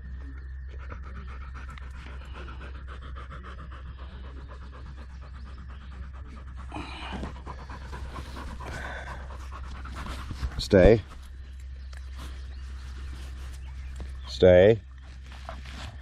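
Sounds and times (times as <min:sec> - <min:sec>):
dog panting rapidly: 0:00.7 - 0:11.4.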